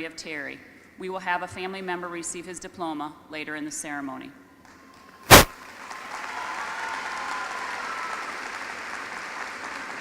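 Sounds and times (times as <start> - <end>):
large audience applauding: 6.2 - 10.0.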